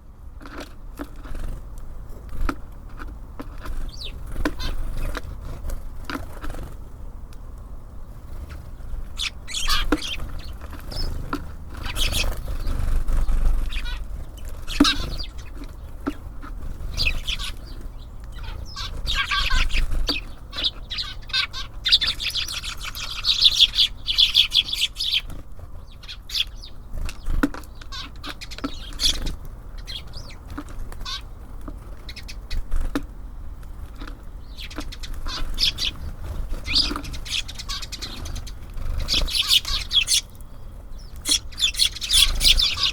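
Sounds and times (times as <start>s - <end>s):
wings fluttering: 0.7s - 7.0s, 8.2s - 42.9s
high bird chirps and clicks: 9.2s - 33.1s, 34.0s - 42.9s.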